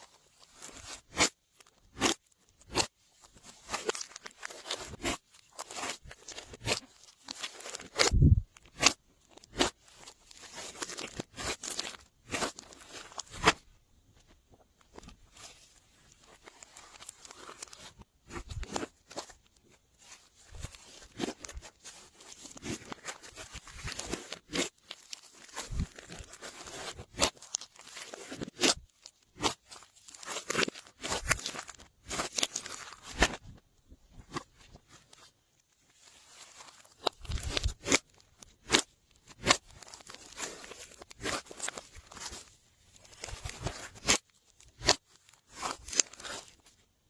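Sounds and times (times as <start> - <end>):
slime popping and crackling: 0.5 - 13.6, 20.4 - 33.4, 36.6 - 42.4, 43.0 - 46.6.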